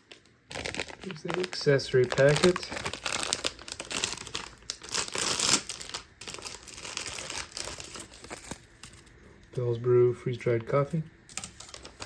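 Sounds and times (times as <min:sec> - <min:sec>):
plastic wrapping crinkling: 0:00.0 - 0:09.6, 0:10.7 - 0:12.0.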